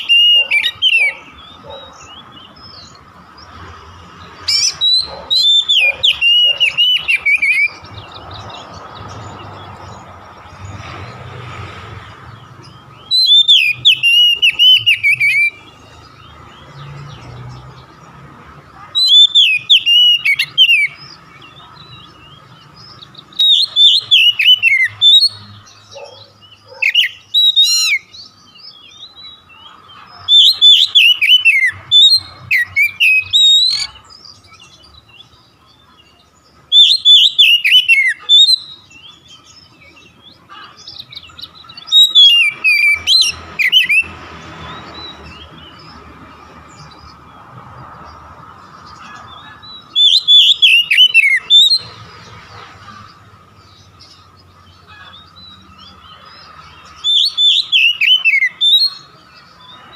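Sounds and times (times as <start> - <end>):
bird singing whistled phrases: 4.6 - 7.8, 13.0 - 15.6, 19.0 - 21.0, 23.3 - 25.4, 36.7 - 39.1, 49.9 - 51.8, 57.0 - 59.1.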